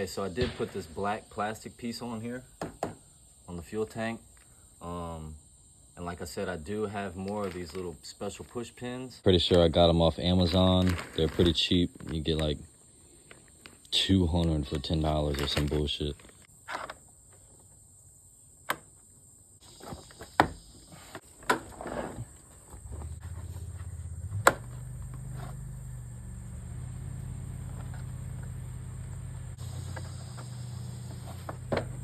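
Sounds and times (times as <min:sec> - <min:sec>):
low motor hum: 0:22.8 - 0:32.0.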